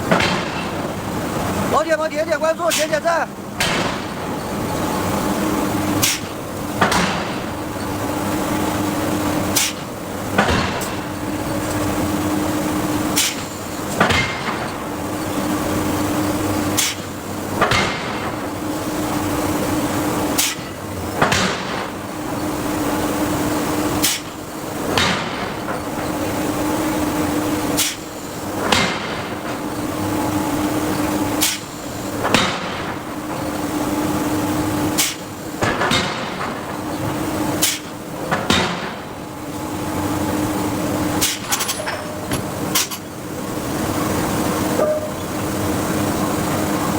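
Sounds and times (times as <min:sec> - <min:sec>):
steady machine hum: 0:00.0 - 0:46.9.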